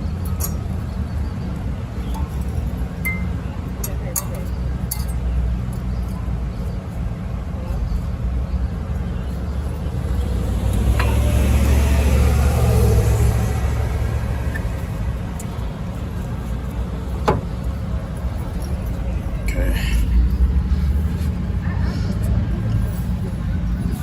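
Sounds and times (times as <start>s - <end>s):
traffic rumble: 0.0s - 24.0s
vehicle passing: 9.7s - 24.0s.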